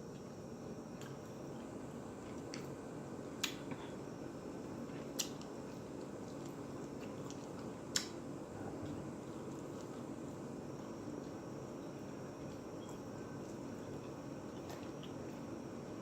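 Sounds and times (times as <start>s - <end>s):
chewing and mouth sounds: 4.9s - 15.5s.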